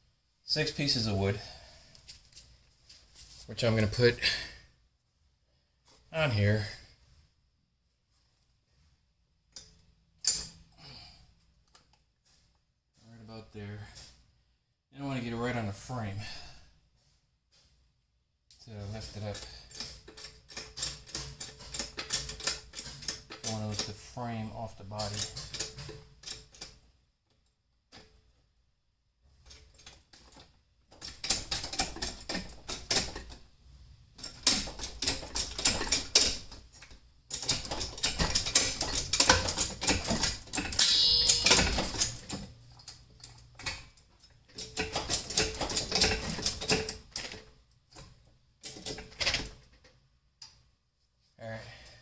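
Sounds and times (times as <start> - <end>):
brief squeak: 40.8 - 42.2.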